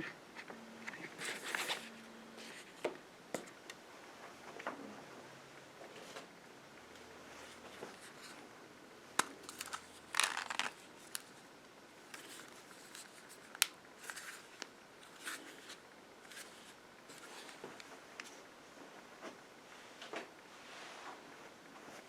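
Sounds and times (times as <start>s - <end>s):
papery rustle: 1.2s - 2.7s, 12.2s - 17.8s.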